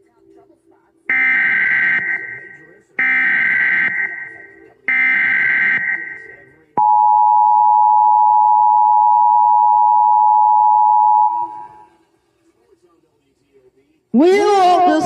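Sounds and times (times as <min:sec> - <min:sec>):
digital header data burst: 0:01.1 - 0:06.4
two-tone attention signal: 0:01.1 - 0:11.9.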